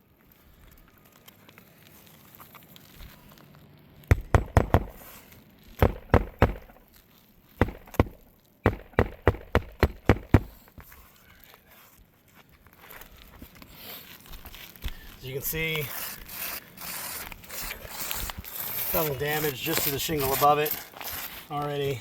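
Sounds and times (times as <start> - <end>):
hammer striking roofing nails: 4.1 - 5.2, 5.8 - 6.8, 7.6 - 10.7.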